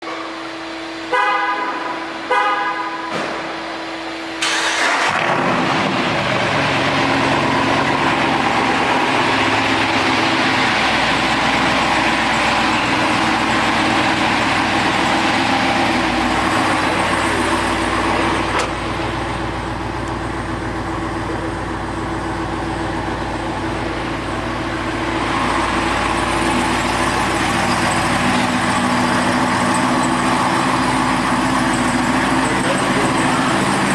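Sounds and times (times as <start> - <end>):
loud engine exhaust running: 0.0 - 33.9
car horn honks: 1.0 - 3.6.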